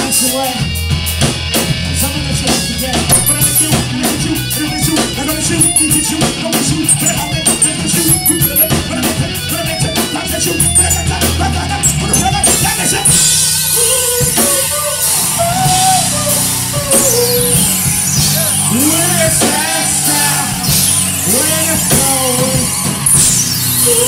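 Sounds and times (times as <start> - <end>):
drum kit: 0.7 - 14.7.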